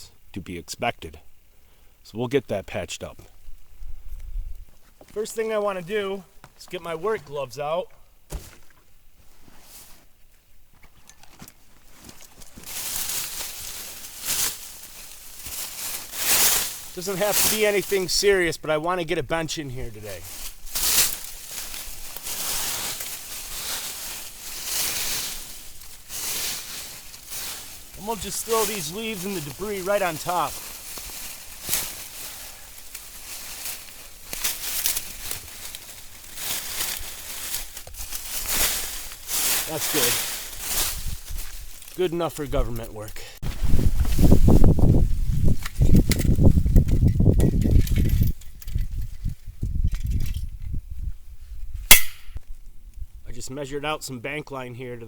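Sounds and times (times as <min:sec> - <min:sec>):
rustling: 0:08.2 - 0:50.5.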